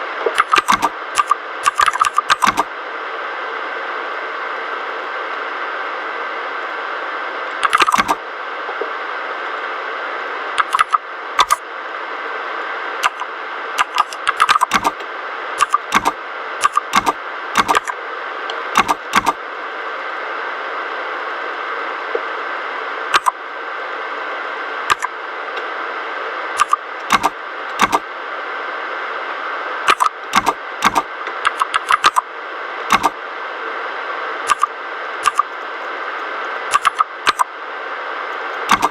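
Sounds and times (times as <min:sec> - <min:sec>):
mechanical keyboard typing: 0:00.4 - 0:02.7, 0:07.6 - 0:08.2, 0:10.6 - 0:11.6, 0:13.0 - 0:13.2, 0:13.8 - 0:15.0, 0:15.6 - 0:18.0, 0:18.8 - 0:19.4, 0:26.6 - 0:28.0, 0:29.9 - 0:32.2, 0:32.9 - 0:33.2, 0:34.5 - 0:35.5, 0:36.7 - 0:37.4, 0:38.7 - 0:38.9.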